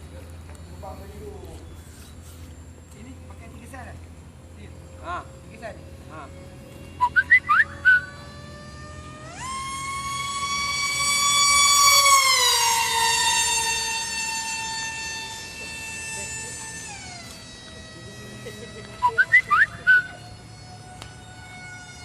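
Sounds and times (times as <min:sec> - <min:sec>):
model jet motor whining: 0:00.3 - 0:22.0
short rising chirps: 0:07.0 - 0:22.0.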